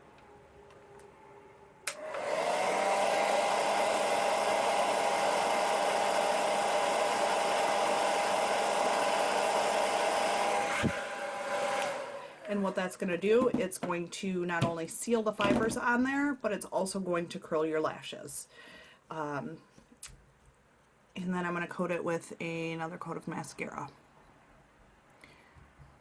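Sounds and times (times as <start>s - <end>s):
blow dryer switch click: 1.8s - 2.2s, 11.7s - 12.0s
blow dryer motor whine: 1.8s - 12.7s.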